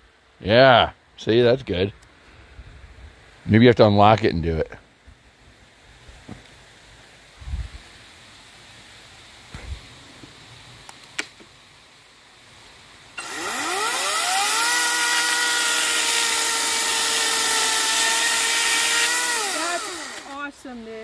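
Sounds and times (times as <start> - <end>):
chainsaw running: 13.2 - 20.5.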